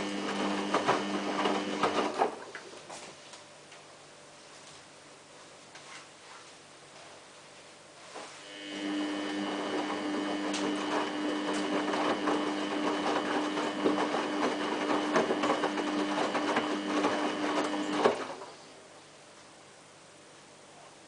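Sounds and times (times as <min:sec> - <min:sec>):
washing machine humming: 0:00.0 - 0:03.1, 0:08.4 - 0:19.2.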